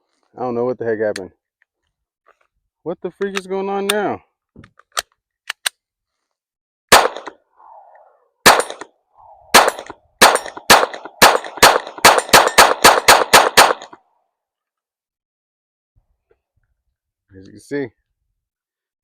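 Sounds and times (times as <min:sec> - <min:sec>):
rifle firing: 0:06.9 - 0:07.3, 0:08.4 - 0:08.8, 0:09.5 - 0:14.0.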